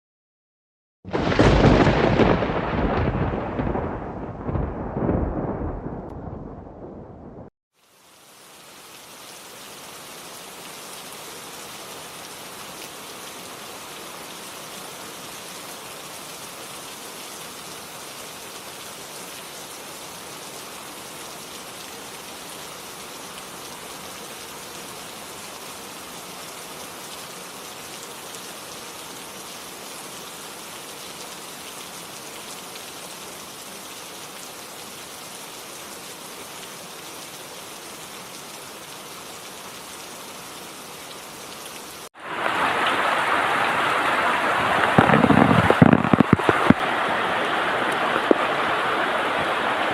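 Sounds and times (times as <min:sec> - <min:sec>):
heavy rain falling: 0:01.1 - 0:49.9.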